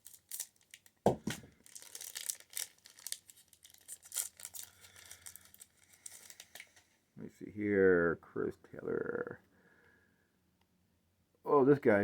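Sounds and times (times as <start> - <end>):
wrapper tearing and crinkling: 0.0 - 6.7.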